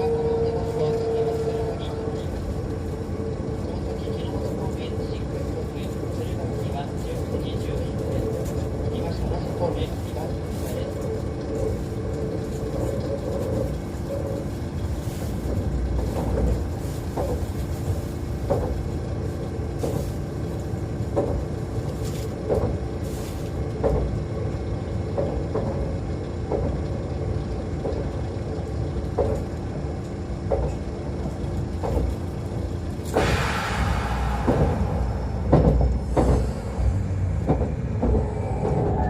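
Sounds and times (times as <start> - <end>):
train wheels rumbling: 0.0 - 39.0
low motor hum: 7.4 - 39.0
short repeating knock: 33.2 - 36.5.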